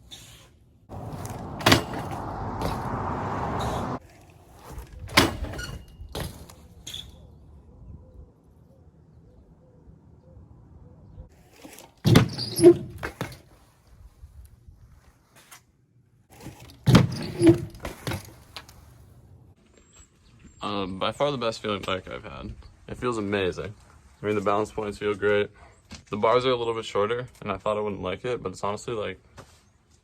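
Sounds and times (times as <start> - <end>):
bike landing clattering impacts: 0.9 - 4.0, 5.1 - 6.7, 11.7 - 13.5, 16.4 - 18.8.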